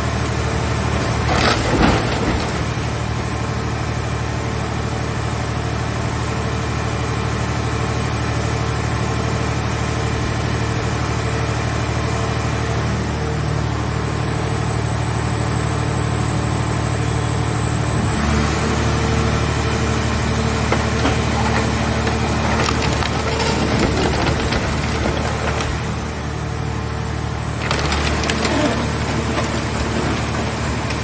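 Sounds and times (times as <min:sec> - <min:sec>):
hydraulic power unit droning: 0:10.2 - 0:31.0
sheet metal crackling and snapping: 0:27.6 - 0:31.0.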